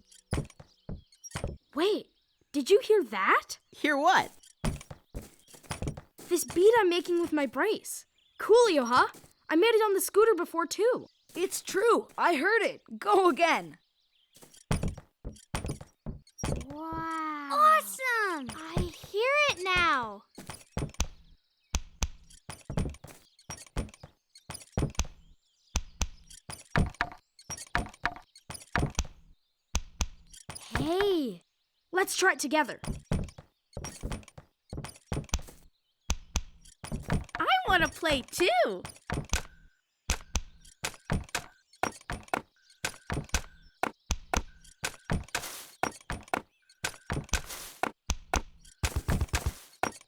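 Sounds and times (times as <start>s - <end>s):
ankle brace knocks and clicks: 0.0s - 1.7s, 4.2s - 7.4s, 14.4s - 17.2s, 18.4s - 31.2s, 32.8s - 50.0s.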